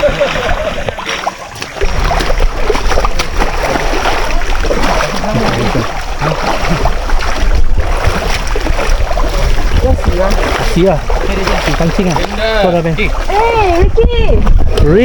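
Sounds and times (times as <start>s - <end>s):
water splashing and running: 0.0s - 15.0s
low rumble on microphone: 1.8s - 15.0s.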